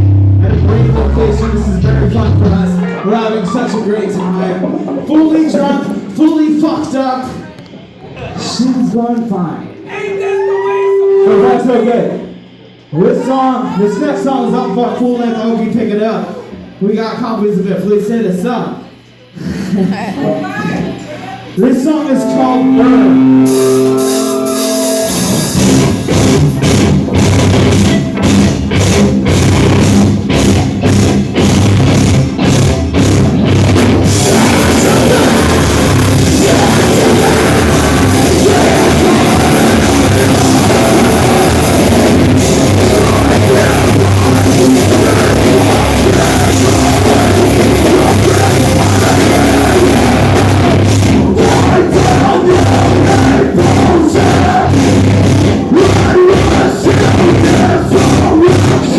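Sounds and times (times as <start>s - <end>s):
live heavy metal band: 22.1s - 58.9s.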